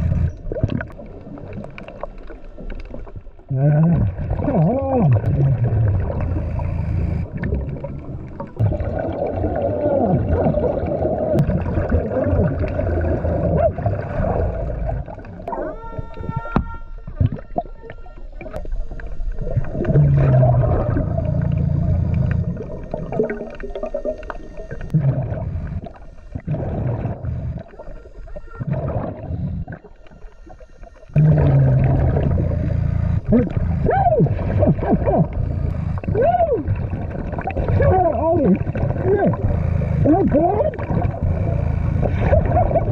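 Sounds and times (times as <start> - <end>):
exhaled bubbles gurgling: 0.0 - 42.9
pitched electronic tone: 5.2 - 7.6, 13.4 - 42.9
diver regulator breathing: 6.1 - 7.3, 13.8 - 37.8, 38.6 - 42.9.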